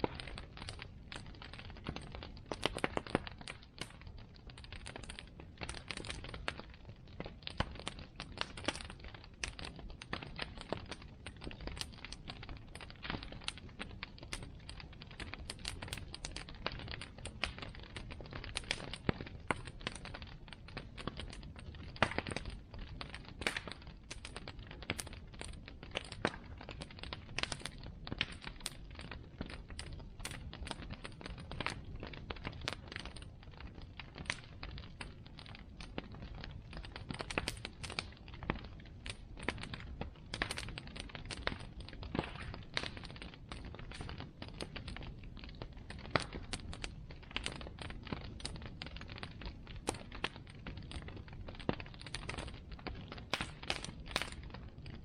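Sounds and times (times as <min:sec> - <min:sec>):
bonfire crackling and popping: 0:00.0 - 0:55.0.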